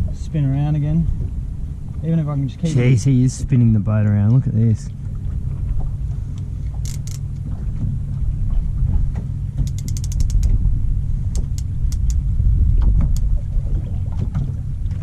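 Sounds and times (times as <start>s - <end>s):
steady low rumble: 0.0s - 15.0s
fishing reel clicking: 6.8s - 7.4s, 9.6s - 10.6s, 11.3s - 12.2s.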